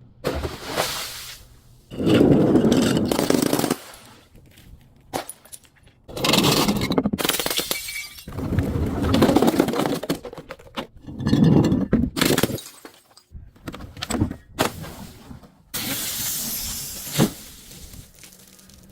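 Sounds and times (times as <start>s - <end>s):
glass bottles crushing and shattering: 1.9s - 4.0s, 5.2s - 8.4s, 9.1s - 13.3s, 18.0s - 18.9s
glass crackles: 16.9s - 18.9s.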